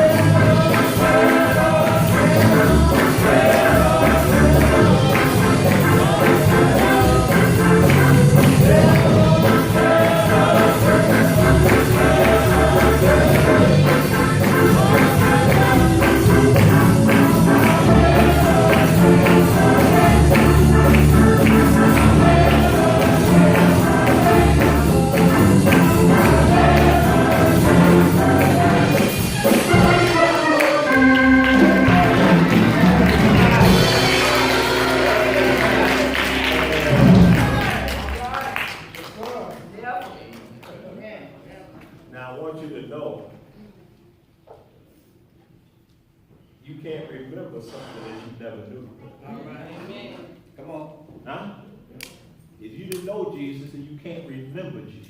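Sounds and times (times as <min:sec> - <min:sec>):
gospel singing voices: 0:00.0 - 0:38.1
band with busy percussion: 0:00.0 - 0:38.5.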